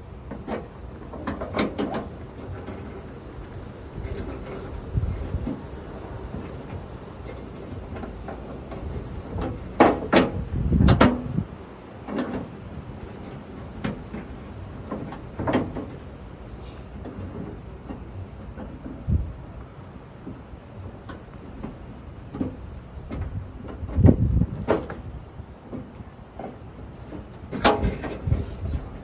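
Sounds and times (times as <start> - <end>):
metal clanks and knocks: 0.2 - 11.4, 12.0 - 16.2, 25.7 - 29.0.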